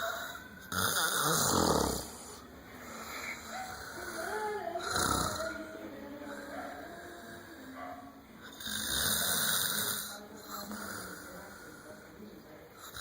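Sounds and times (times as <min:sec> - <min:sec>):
man snoring: 0:00.6 - 0:02.4, 0:04.8 - 0:05.6, 0:08.5 - 0:11.3.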